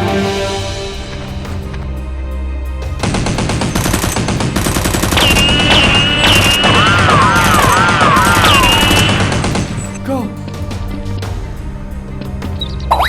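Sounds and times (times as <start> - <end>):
low music drone: 0.0 - 13.0
automatic gunfire effects: 3.0 - 9.9.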